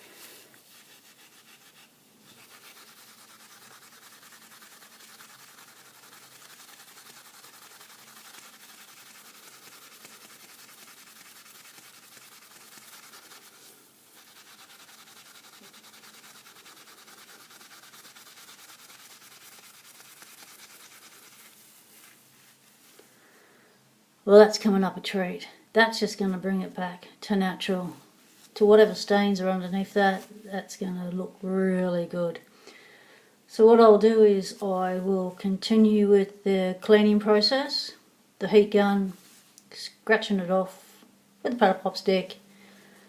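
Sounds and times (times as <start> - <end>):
steel wool rubbing metal: 0.0 - 22.6.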